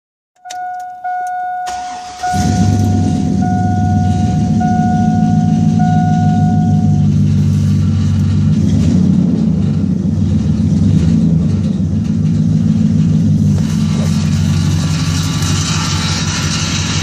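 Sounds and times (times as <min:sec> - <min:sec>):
warning chime beeping: 0:00.4 - 0:07.2
truck engine idling: 0:01.0 - 0:17.0.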